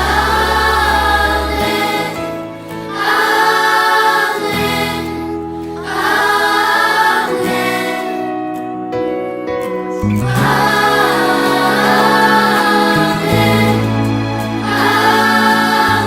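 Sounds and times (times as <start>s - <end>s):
sustained low accompaniment: 0.0s - 2.6s
choir singing a hymn: 0.0s - 8.4s, 10.2s - 16.0s.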